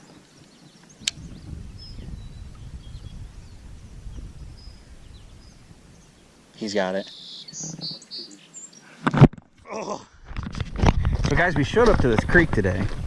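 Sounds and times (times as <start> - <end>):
faint bird chirps: 0.0 - 8.9
sharp click: 1.0 - 1.2
low outdoor rumble: 1.0 - 6.5.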